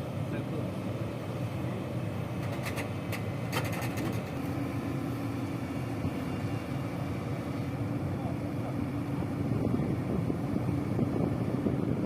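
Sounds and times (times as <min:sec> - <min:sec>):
heavy vehicle engine running: 0:00.0 - 0:12.0.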